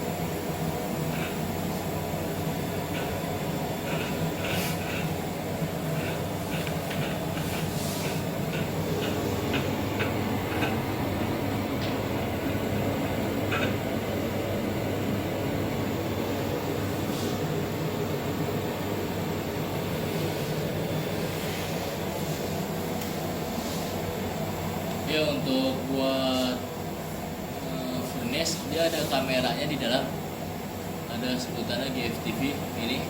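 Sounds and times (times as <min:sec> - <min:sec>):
ventilation hum and hiss: 0:00.0 - 0:33.0.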